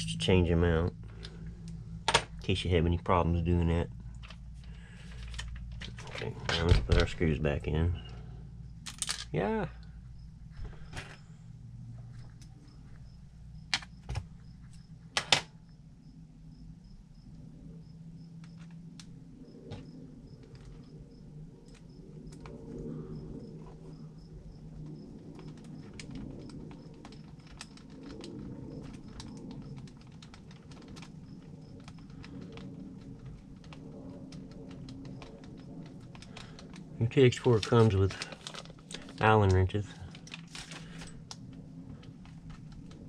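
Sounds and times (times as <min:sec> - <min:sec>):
tools and parts handled: 0:04.2 - 0:07.2, 0:08.8 - 0:09.4, 0:31.8 - 0:43.0.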